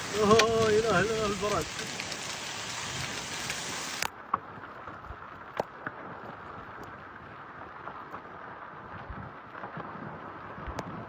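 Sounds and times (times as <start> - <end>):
hailstones knocking on hard surfaces: 0.0 - 4.1
hiss of falling rain and hail: 0.0 - 10.9
heavy downpour: 0.0 - 11.0.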